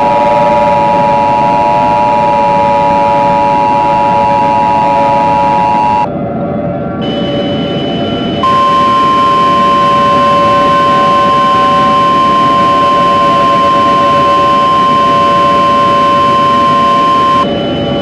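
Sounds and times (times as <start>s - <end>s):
steady single-pitched alert tone: 7.0s - 18.0s.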